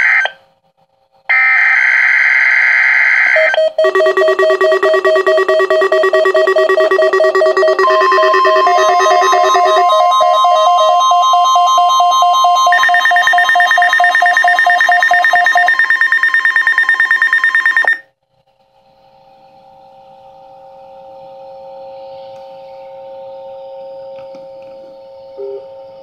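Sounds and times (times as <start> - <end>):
steady electronic tone: 3.5 - 15.7
high pulsing tone: 3.6 - 12.0
low warbling tone: 3.9 - 11.0.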